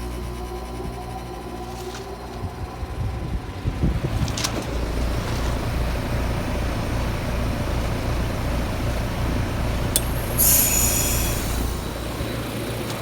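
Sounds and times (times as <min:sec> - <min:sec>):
heat pump humming: 0:00.0 - 0:13.0
loud refrigerant hiss: 0:04.7 - 0:13.0
sharp click: 0:10.0 - 0:11.8.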